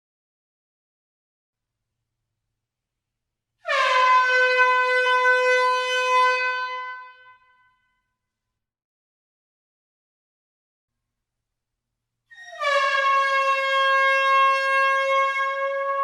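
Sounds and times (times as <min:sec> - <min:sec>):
air horn long blast: 0:03.6 - 0:07.7, 0:12.6 - 0:16.0.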